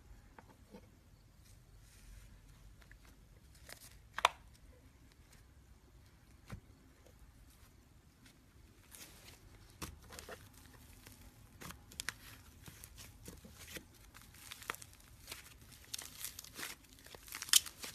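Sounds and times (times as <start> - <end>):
slime crackling and popping: 10.1 - 17.9.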